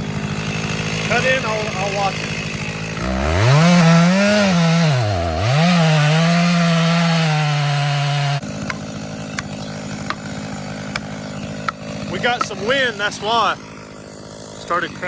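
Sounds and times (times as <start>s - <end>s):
chainsaw cutting wood: 0.0s - 15.0s
wood cracking: 6.3s - 14.5s.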